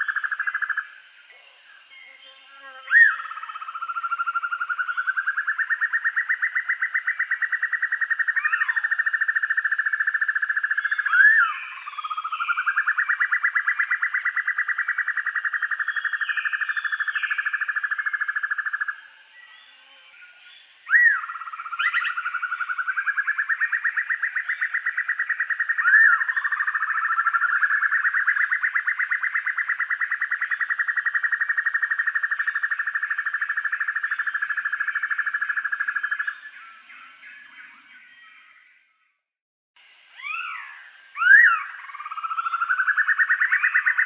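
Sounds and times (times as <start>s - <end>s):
bird trilling: 40.1s - 44.0s.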